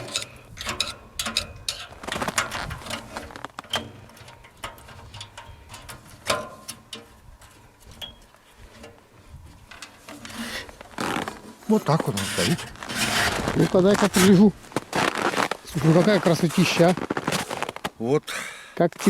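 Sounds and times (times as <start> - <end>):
metal clicks and taps of stove: 0.0 - 3.0, 3.6 - 9.0.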